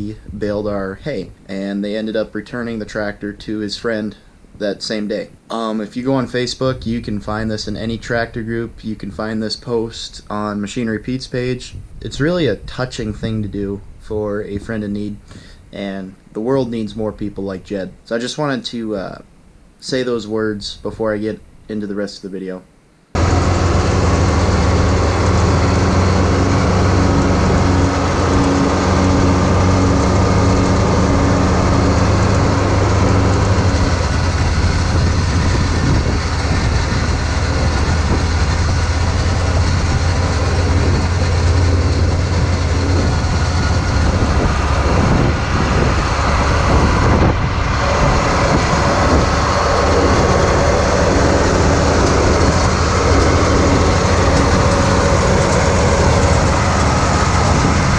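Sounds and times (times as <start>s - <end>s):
tractor diesel engine running: 23.2s - 57.9s.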